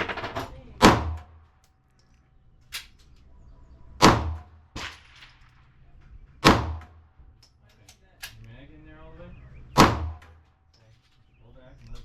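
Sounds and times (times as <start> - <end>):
pistol shots: 0.0 - 1.5, 4.0 - 7.1, 9.7 - 10.5
faint cracks: 1.2 - 3.3, 4.8 - 8.6.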